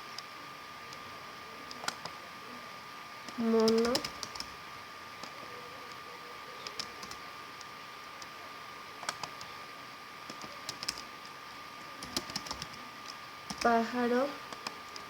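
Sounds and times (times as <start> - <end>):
faint high-pitched hum: 0.0 - 15.0.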